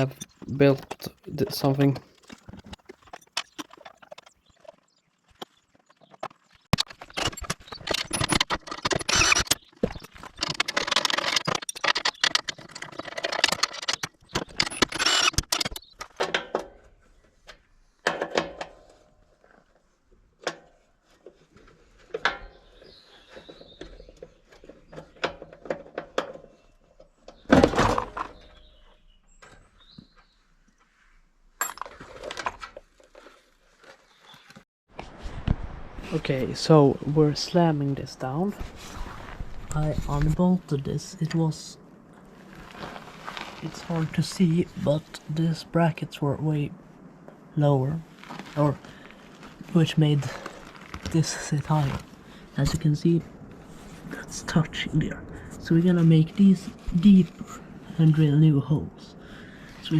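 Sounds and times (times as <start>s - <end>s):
objects clicking and knocking: 0.0s - 19.1s
rustling and scraping: 0.0s - 55.2s.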